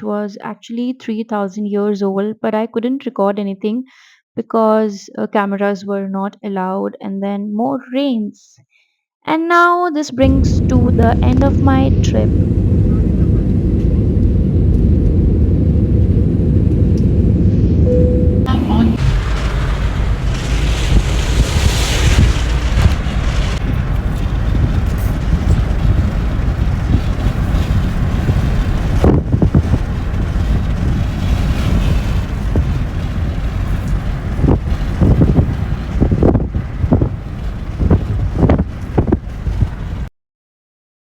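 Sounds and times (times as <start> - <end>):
wind buffeting microphone: 10.2 - 40.1.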